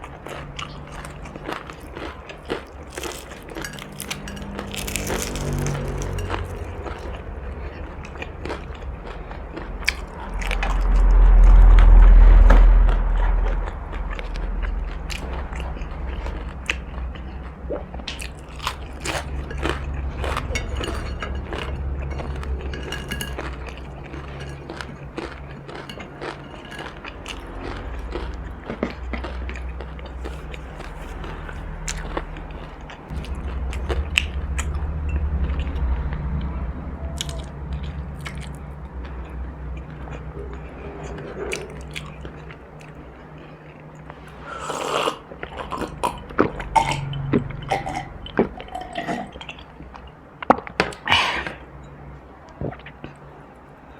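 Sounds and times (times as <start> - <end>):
crunchy chewing: 0.0 - 51.7
loud low rumble: 3.6 - 25.5, 26.9 - 42.6.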